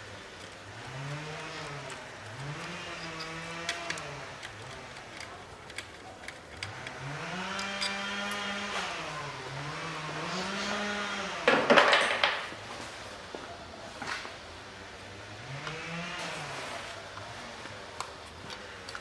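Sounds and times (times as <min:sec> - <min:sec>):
power tool motor whining: 0:00.7 - 0:05.1, 0:06.6 - 0:11.5.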